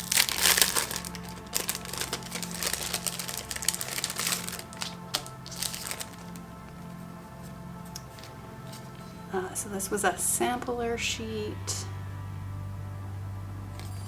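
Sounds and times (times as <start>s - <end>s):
packaging crinkling: 0.0s - 6.6s
background music: 0.0s - 14.0s.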